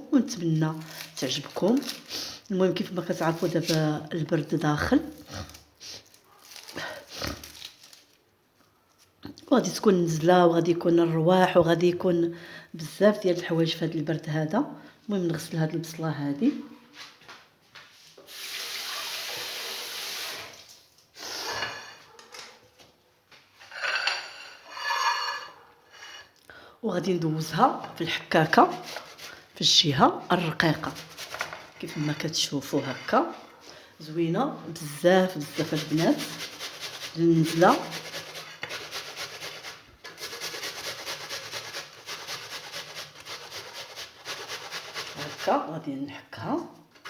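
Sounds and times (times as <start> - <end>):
tap water running and splashing: 18.2 - 20.8
onion grated on hand grater: 27.8 - 29.6, 30.4 - 33.4, 35.3 - 45.7.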